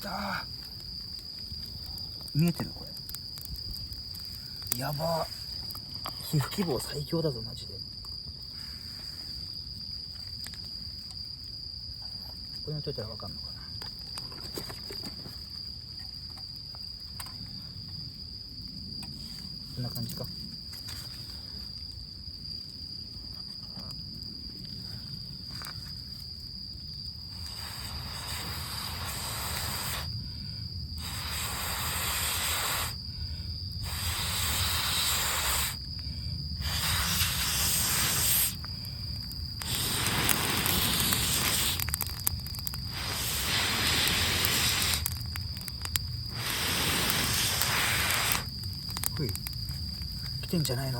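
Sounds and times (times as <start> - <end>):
crickets trilling: 0.0 - 50.9
person blowing on kindling: 27.3 - 30.1, 31.0 - 33.0, 33.8 - 35.9, 36.6 - 38.6, 39.6 - 45.3, 46.3 - 48.5.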